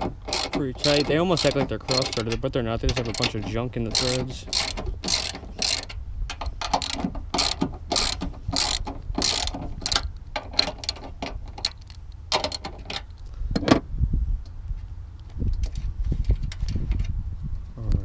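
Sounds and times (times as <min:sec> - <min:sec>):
socket ratchet clicking: 0:00.0 - 0:13.2.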